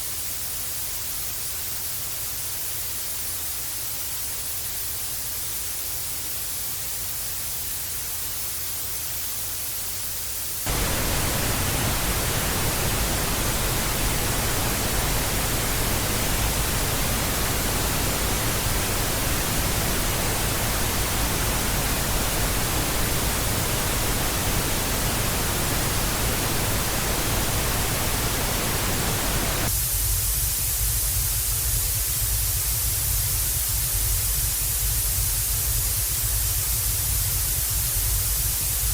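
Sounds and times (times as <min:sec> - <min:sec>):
tv static hiss: 0:00.0 - 0:29.7.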